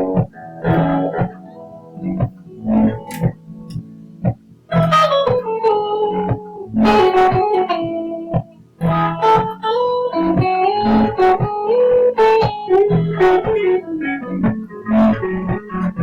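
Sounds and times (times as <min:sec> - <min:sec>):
electric guitar lead line: 0:00.0 - 0:16.0
bass notes: 0:02.0 - 0:03.5, 0:08.3 - 0:09.6, 0:10.2 - 0:11.6, 0:12.8 - 0:13.6, 0:14.3 - 0:16.0.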